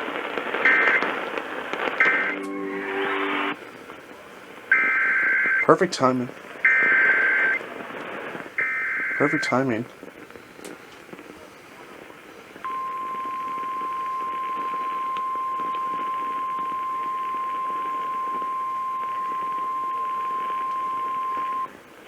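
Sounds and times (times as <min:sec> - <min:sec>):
faint radio hiss: 0:00.0 - 0:22.0
steady high alarm tone: 0:00.7 - 0:01.2, 0:02.0 - 0:03.6, 0:08.6 - 0:09.7, 0:12.7 - 0:21.7.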